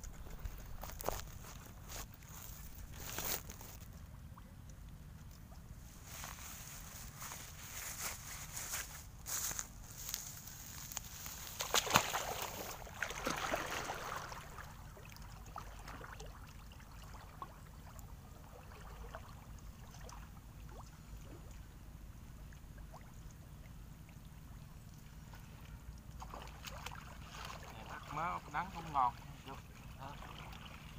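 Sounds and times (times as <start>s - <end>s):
water sloshing and splashing: 10.0s - 30.9s.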